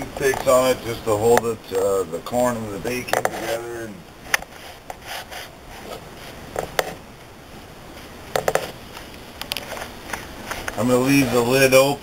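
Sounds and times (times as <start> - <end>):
faint rubbing: 3.0 - 7.0, 7.9 - 11.9
utensils knocking and clicking: 8.3 - 8.7.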